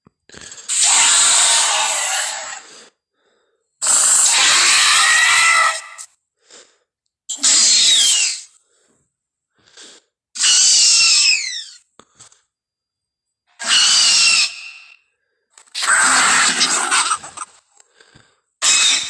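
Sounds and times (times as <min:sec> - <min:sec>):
breathy hisses: 0:00.3 - 0:04.8, 0:09.6 - 0:12.4
creature screeching: 0:00.7 - 0:02.6, 0:03.8 - 0:06.1, 0:07.3 - 0:08.5, 0:10.4 - 0:11.8, 0:13.6 - 0:15.0, 0:15.7 - 0:17.5, 0:18.6 - 0:19.0.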